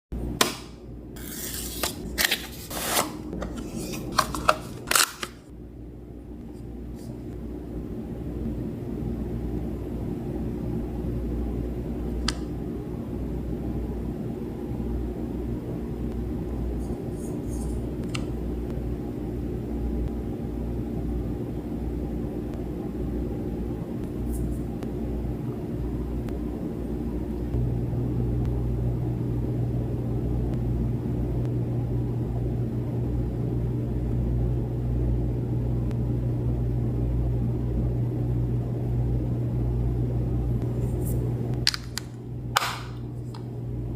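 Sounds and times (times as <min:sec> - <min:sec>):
steady low hum: 0:00.1 - 0:43.9
packaging being handled: 0:01.2 - 0:05.4, 0:41.7 - 0:43.4.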